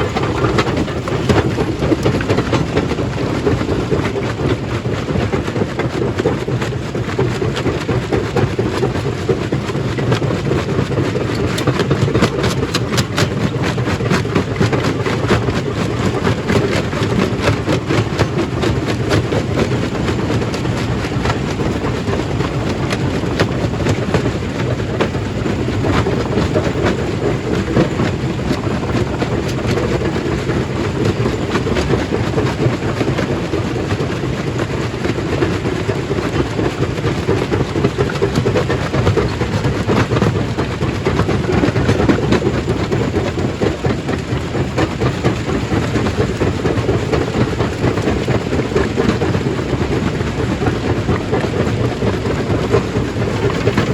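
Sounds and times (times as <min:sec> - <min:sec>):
stone crusher rumbling: 0:00.0 - 0:04.1
rock rattling and knocking: 0:00.0 - 0:53.9.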